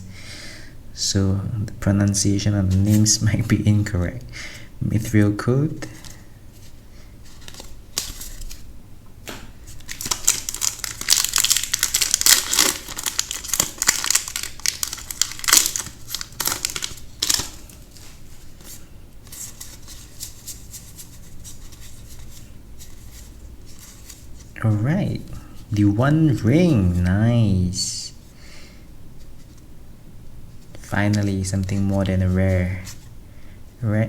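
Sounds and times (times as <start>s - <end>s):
trading cards rustling: 5.9s - 8.7s, 9.7s - 24.6s
foil wrapper crinkling: 9.7s - 24.5s.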